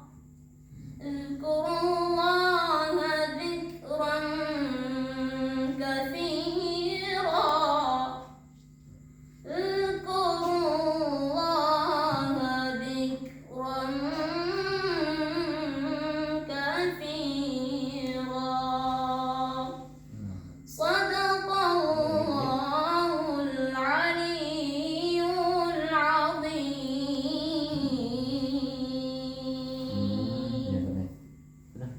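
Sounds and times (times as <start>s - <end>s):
high voice reciting melodically: 9.5s - 19.8s, 20.7s - 31.1s.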